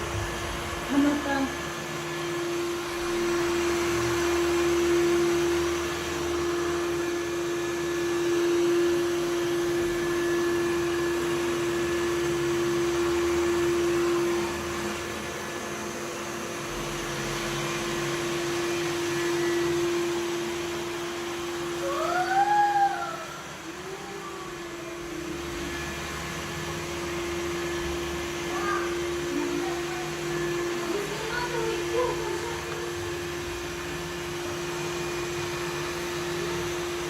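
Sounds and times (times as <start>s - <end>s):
robot vacuum whirring: 13.3s - 37.0s.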